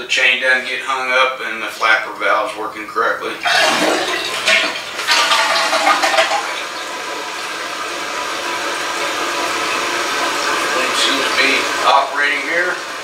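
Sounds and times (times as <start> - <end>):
toilet flushing: 3.2 - 13.0
toilet tank refilling hiss: 3.4 - 13.0.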